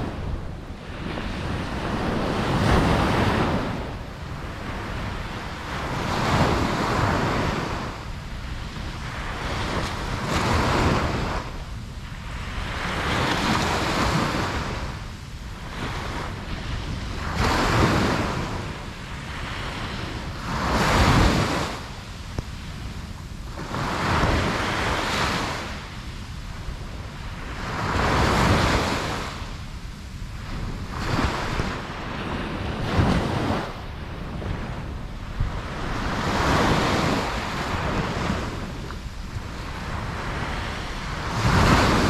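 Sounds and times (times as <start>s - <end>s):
ocean waves breaking: 0.0s - 14.9s, 30.4s - 42.0s.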